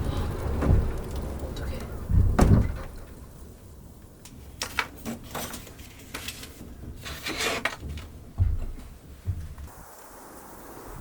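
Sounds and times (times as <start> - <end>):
low thump: 2.1 - 3.0, 8.4 - 9.7.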